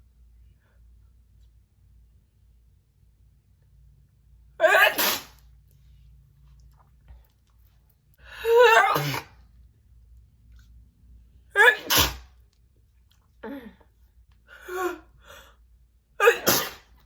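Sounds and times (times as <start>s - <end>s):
woman sneezing: 4.6s - 5.4s, 8.4s - 9.4s, 11.6s - 12.3s, 16.2s - 17.0s.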